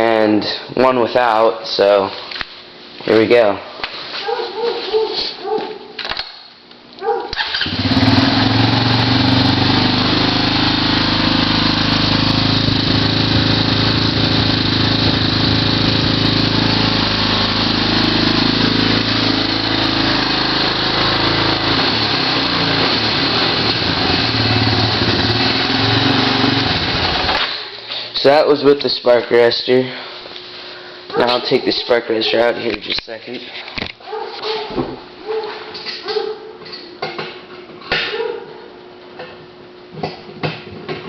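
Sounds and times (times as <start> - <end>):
atv engine starting and running: 7.3 - 27.7.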